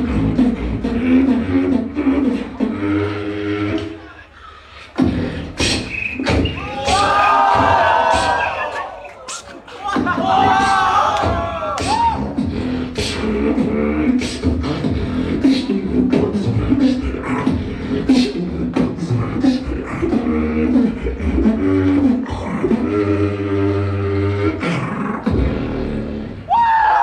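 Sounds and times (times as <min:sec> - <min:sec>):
hummed bass line: 0:00.0 - 0:04.0, 0:10.0 - 0:26.5
beatboxing snare and kick sounds: 0:04.9 - 0:23.0.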